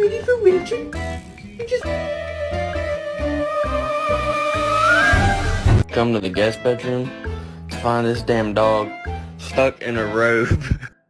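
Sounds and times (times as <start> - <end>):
bass line: 1.8 - 5.9
sliding melody line: 1.9 - 5.9.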